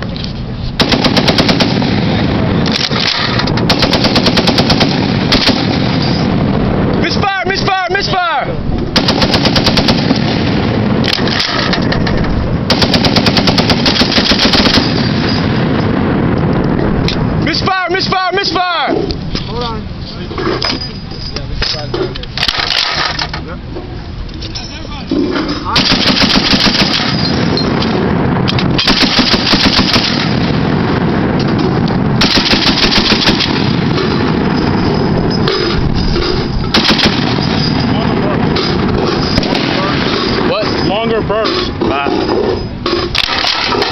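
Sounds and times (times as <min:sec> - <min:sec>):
heavy machine gun firing: 0:00.8 - 0:06.6, 0:08.9 - 0:16.4, 0:25.8 - 0:40.6
continuous din of gunfire: 0:00.8 - 0:19.0, 0:21.6 - 0:23.3, 0:25.7 - 0:43.9.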